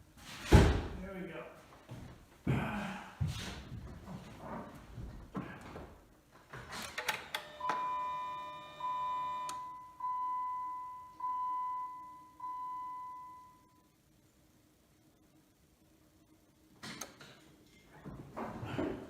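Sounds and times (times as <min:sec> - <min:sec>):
electronic warning chime dinging: 0:07.4 - 0:13.8.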